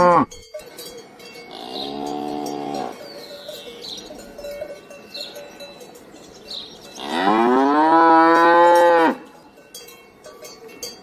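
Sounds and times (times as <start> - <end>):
cow mooing: 0.0 - 0.4, 1.5 - 3.0, 7.0 - 9.2.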